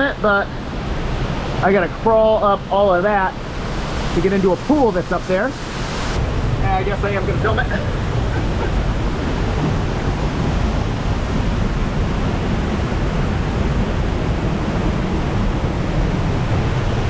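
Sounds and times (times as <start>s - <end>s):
waterfall rushing: 0.5s - 17.0s.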